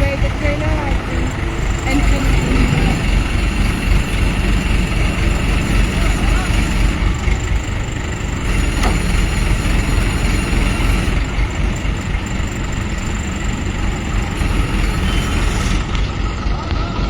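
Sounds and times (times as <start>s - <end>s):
diesel engine rumbling: 0.0s - 17.0s.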